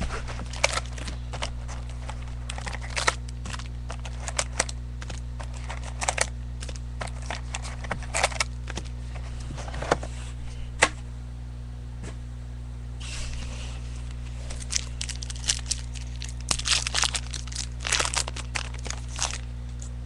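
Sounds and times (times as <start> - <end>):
foil packs crinkling and ripping: 0.0 - 9.0, 13.2 - 19.5
steady electrical hum: 0.0 - 20.0.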